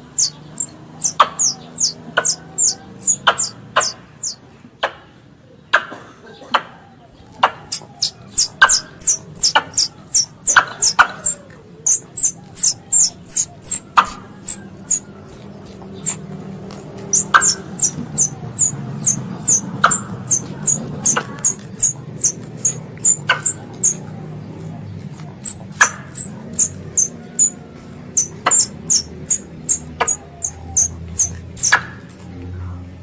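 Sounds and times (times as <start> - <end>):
high-pitched squirrel chirps: 0.0 - 4.4, 7.4 - 16.2, 17.0 - 24.1, 25.3 - 32.1
sharp clicks: 7.4 - 24.0.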